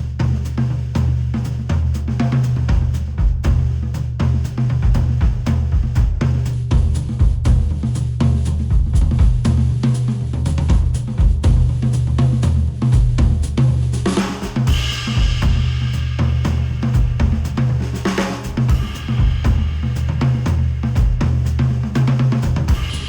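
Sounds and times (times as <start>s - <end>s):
instrumental music with drum beat: 0.0s - 23.0s
cymbal wash: 22.7s - 23.0s.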